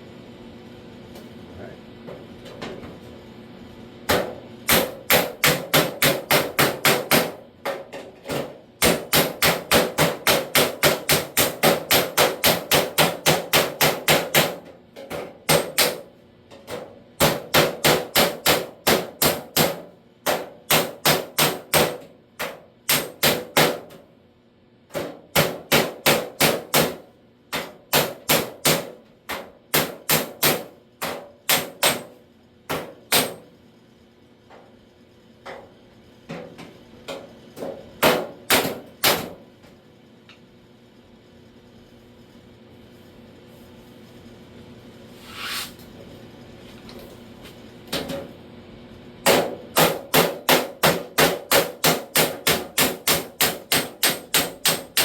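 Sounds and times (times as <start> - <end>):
hammer striking sheet steel: 4.1 - 16.1, 16.7 - 24.0, 24.9 - 33.5, 49.2 - 55.0.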